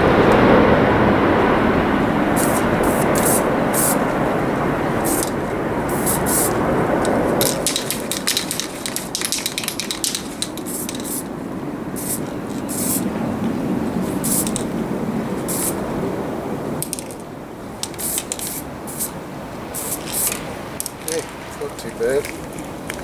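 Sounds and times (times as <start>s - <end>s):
wind buffeting microphone: 0.0s - 23.0s
spray can hissing: 2.3s - 4.2s, 5.0s - 11.3s, 12.0s - 13.1s, 14.0s - 14.7s, 15.4s - 15.8s, 16.8s - 17.2s, 17.8s - 20.5s.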